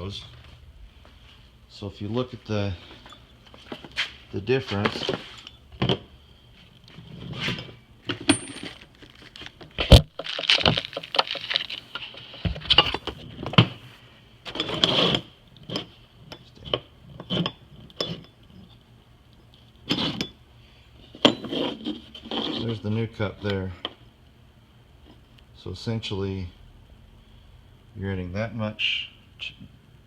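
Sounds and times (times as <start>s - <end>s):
small metal parts clinking: 8.1s - 9.6s, 10.2s - 13.0s.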